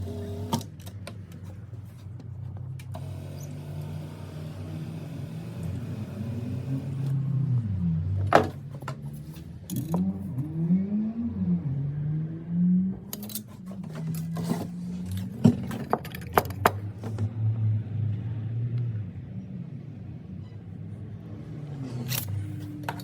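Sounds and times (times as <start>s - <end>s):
small electric motor whirring: 3.0s - 7.3s.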